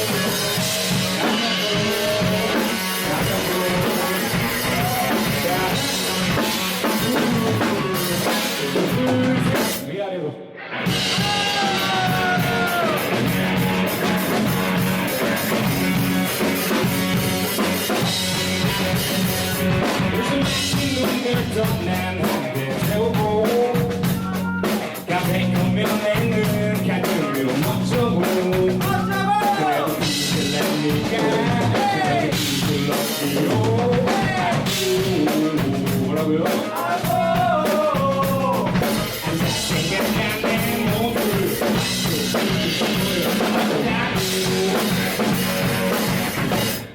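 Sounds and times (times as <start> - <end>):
rock band playing: 0.0 - 10.0, 10.6 - 46.9
pitch-bending voice or melody: 10.6 - 15.3.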